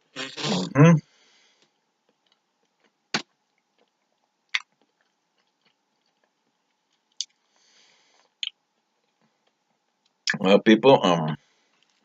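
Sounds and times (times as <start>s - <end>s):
quiet chewing: 1.6s - 10.4s.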